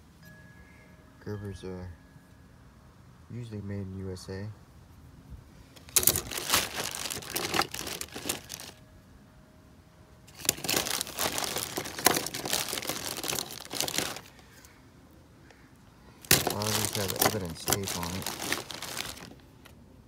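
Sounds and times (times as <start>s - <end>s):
plastic bag crinkling: 5.9s - 8.8s, 10.3s - 14.4s, 16.2s - 19.7s.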